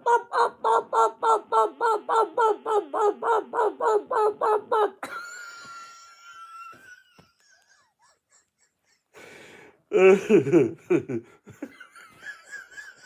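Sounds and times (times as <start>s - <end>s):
high drawn-out wail: 0.0s - 5.0s
person imitating chicken squawks: 0.0s - 5.0s.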